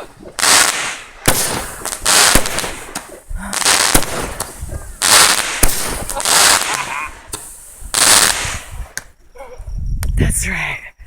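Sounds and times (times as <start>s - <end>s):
fireworks bangs: 0.0s - 9.1s
crackling hiss of fireworks: 0.0s - 9.2s.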